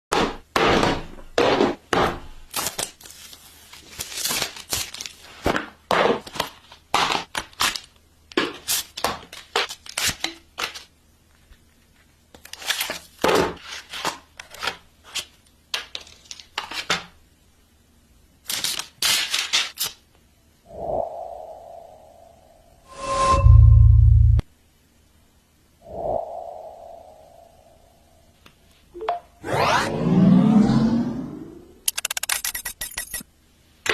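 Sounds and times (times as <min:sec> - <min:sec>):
packaging tearing and crinkling: 0:02.5 - 0:05.5, 0:18.4 - 0:20.0
brief tone: 0:22.9 - 0:24.4.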